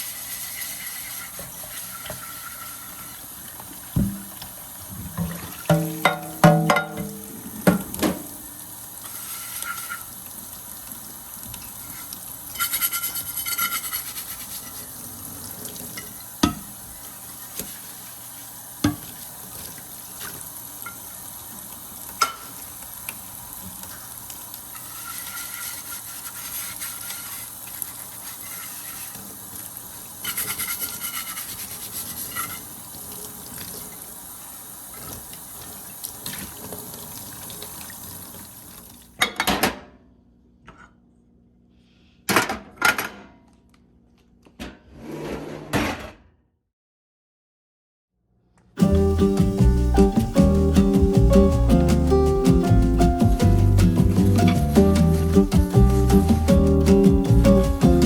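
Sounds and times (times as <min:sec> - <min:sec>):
tap water running into sink: 0:00.1 - 0:14.6, 0:15.4 - 0:39.2
things knocking in sink: 0:03.9 - 0:04.3, 0:05.1 - 0:08.3.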